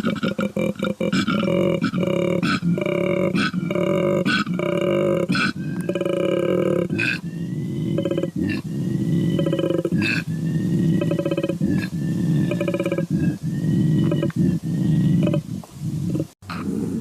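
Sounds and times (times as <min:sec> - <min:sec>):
animal low rough calls: 0:00.0 - 0:17.0.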